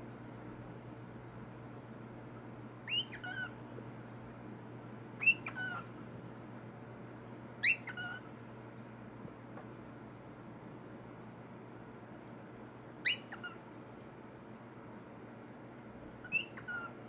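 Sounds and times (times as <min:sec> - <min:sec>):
cockatiel whistling: 0:02.9 - 0:03.6, 0:05.2 - 0:05.8, 0:07.6 - 0:08.2, 0:13.0 - 0:13.6, 0:16.2 - 0:17.0.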